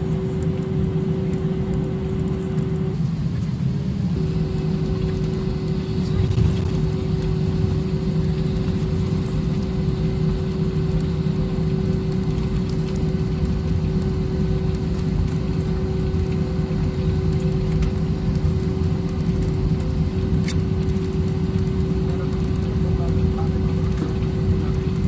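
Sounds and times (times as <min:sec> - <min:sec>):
airliner cabin rumble: 0:00.0 - 0:25.0.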